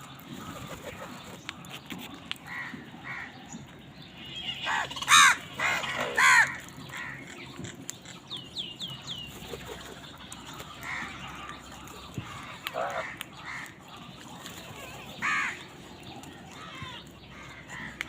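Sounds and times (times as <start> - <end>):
crows cawing: 2.5 - 3.3, 4.6 - 7.4, 10.5 - 13.8, 15.2 - 15.7, 16.4 - 18.0.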